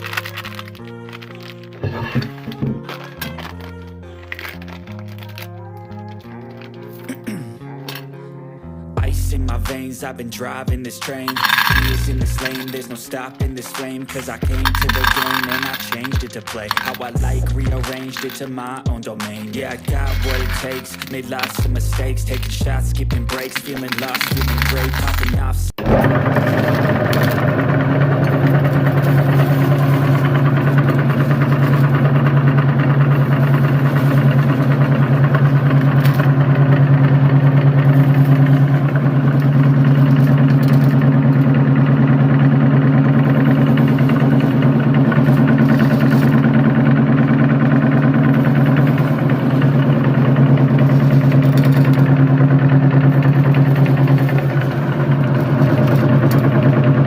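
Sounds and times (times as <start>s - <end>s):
meat grinder motor humming: 0.0s - 5.4s, 19.5s - 57.0s.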